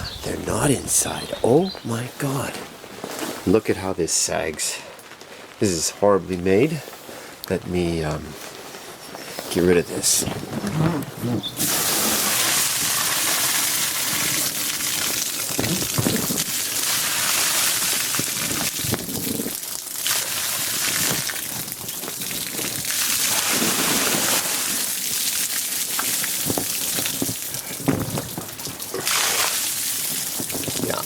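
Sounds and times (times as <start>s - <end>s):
rainwater gushing off a roof: 11.4s - 31.0s.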